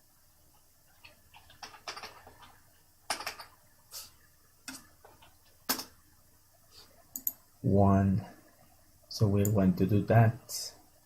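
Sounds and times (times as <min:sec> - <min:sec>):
keyboard and mouse clicks: 0:07.1 - 0:07.4.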